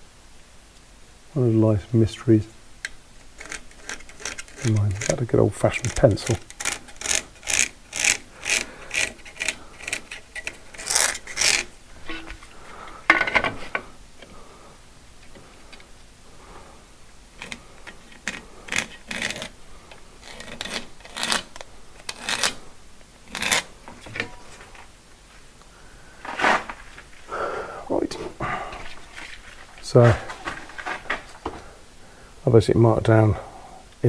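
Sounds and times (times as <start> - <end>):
pencil scratching on brick: 3.4 - 12.4, 17.4 - 19.6, 20.2 - 22.6, 23.2 - 23.7.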